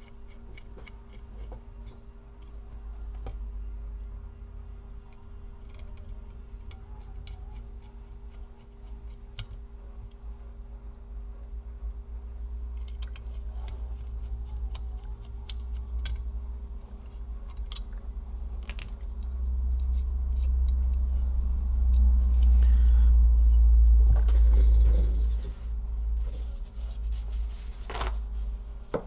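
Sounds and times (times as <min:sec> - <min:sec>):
low rumble: 0:16.2 - 0:28.9
scratchy rubbing: 0:24.2 - 0:28.6.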